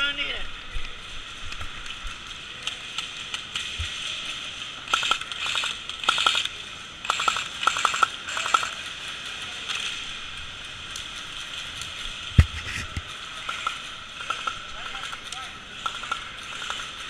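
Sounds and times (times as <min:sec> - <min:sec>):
steady outdoor hiss: 0:00.0 - 0:17.0
airsoft guns firing: 0:04.8 - 0:08.8, 0:13.4 - 0:17.0.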